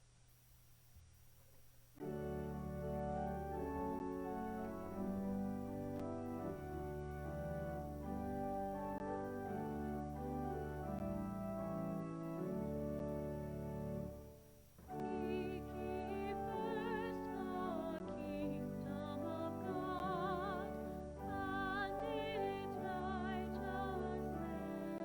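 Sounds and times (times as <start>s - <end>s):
sustained accompaniment: 2.0s - 25.0s
operatic solo voice singing: 15.0s - 25.0s.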